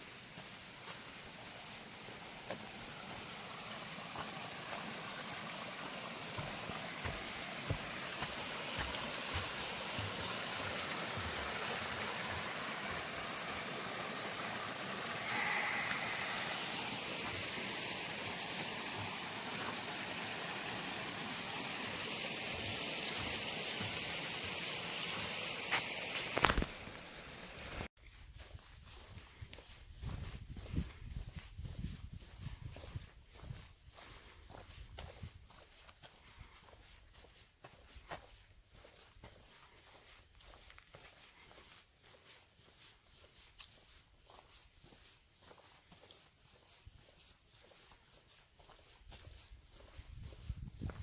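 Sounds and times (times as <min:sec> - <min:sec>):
water rushing: 0:00.0 - 0:27.9
soft footsteps on trail: 0:00.0 - 0:51.0
brief high tone: 0:15.2 - 0:16.7.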